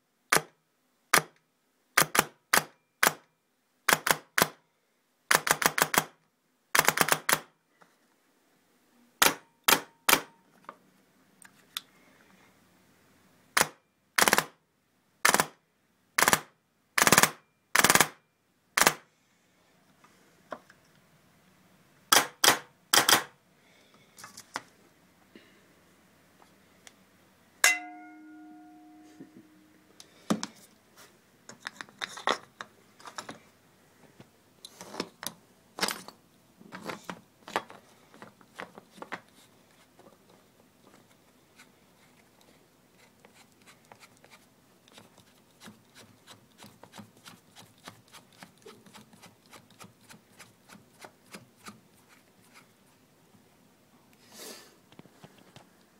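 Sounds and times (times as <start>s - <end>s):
sharp knock with ringing tone: 27.6s - 29.0s.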